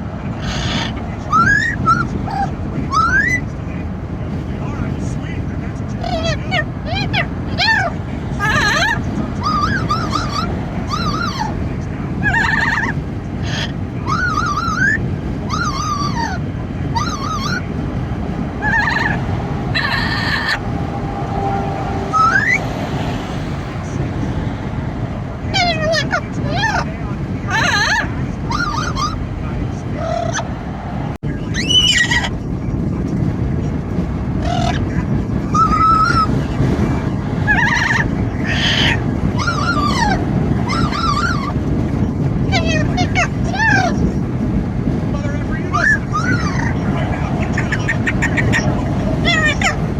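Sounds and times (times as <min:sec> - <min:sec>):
car and wind rumble: 0:00.0 - 0:49.9
parrot squawk: 0:00.4 - 0:03.4, 0:06.0 - 0:11.6, 0:12.2 - 0:17.8, 0:18.6 - 0:20.6, 0:25.4 - 0:30.5, 0:37.5 - 0:41.6
parrot whistled calls: 0:00.4 - 0:03.4, 0:06.0 - 0:11.6, 0:12.2 - 0:16.4, 0:17.0 - 0:17.6, 0:27.5 - 0:29.2.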